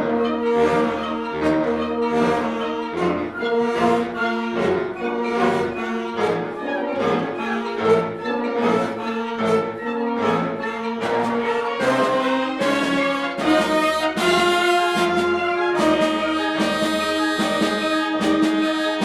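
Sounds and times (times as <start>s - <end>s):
concert band playing: 9.5s - 19.0s.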